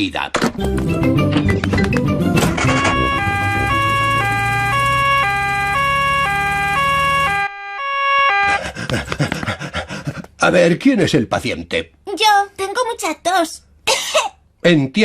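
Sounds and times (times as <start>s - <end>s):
engine hum: 2.0s - 7.4s
cartoon two-tone siren: 2.4s - 8.6s.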